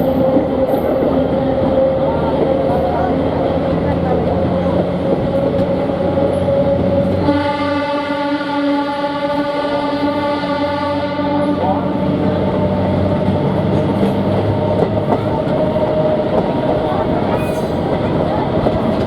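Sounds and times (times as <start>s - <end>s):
train horn blast: 7.1s - 12.4s.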